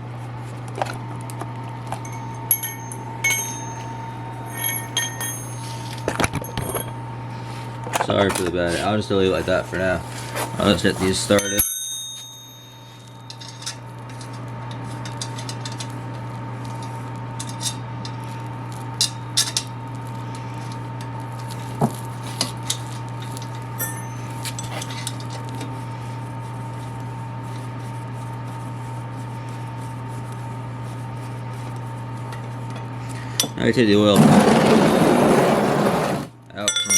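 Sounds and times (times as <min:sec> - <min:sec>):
steady low hum: 0:00.0 - 0:36.9
metallic clinks of bolts and tools: 0:02.0 - 0:05.8, 0:11.3 - 0:14.4, 0:36.6 - 0:36.9.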